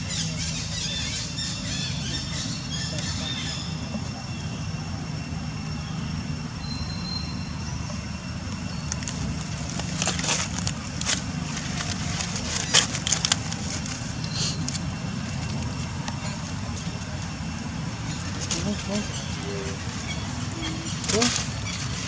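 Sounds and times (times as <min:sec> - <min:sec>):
steady low rumble: 0:00.0 - 0:22.0.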